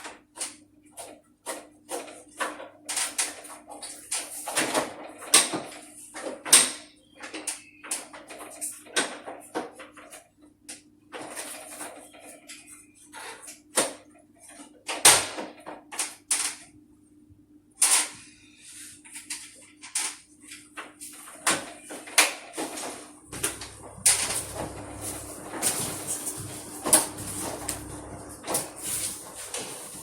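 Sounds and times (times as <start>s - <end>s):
air conditioner parts knocking and scraping: 0.0s - 6.9s, 19.2s - 30.0s
faint steady hum: 23.1s - 30.0s
low rumble: 23.3s - 29.2s.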